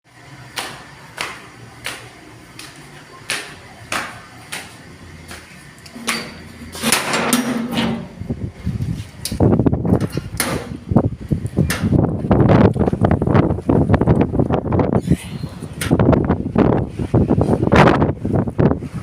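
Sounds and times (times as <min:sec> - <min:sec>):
wind rushing: 0:07.9 - 0:19.0
something loose knocking in wind: 0:09.3 - 0:10.9, 0:11.5 - 0:13.1.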